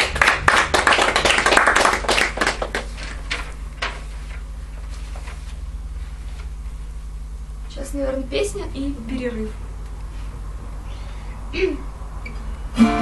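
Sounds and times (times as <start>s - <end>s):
audience applauding: 0.0s - 3.2s
low steady hum: 0.0s - 13.0s.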